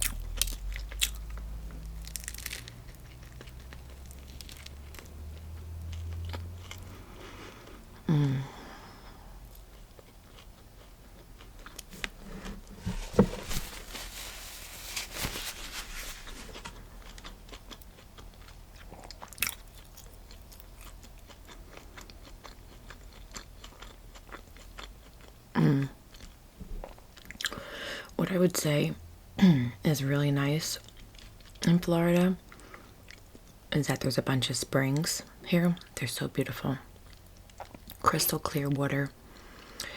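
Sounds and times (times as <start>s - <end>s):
bread crust crunching: 0.0s - 8.4s, 9.0s - 25.4s
chewing and biting sandwich: 0.0s - 25.5s, 26.1s - 27.6s, 30.8s - 31.6s, 37.0s - 38.0s.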